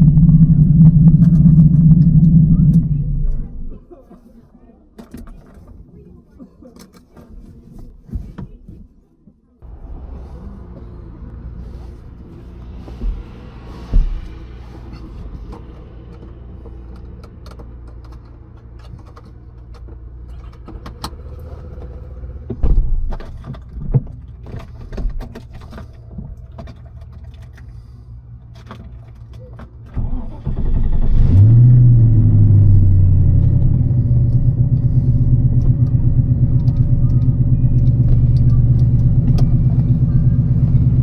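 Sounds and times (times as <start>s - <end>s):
engine cranking and starting: 0.0s - 3.8s, 29.9s - 41.0s
engine revving and idling: 0.0s - 3.9s, 9.6s - 18.2s, 30.0s - 41.0s
low rumble: 0.0s - 3.9s, 9.6s - 17.1s, 30.0s - 41.0s
handling clicks and rattles: 22.8s - 30.0s.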